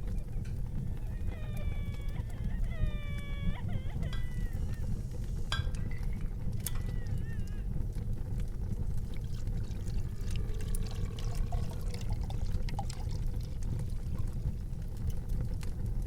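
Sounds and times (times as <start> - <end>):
low rumble: 0.0 - 16.0
liquid pouring: 9.0 - 14.6.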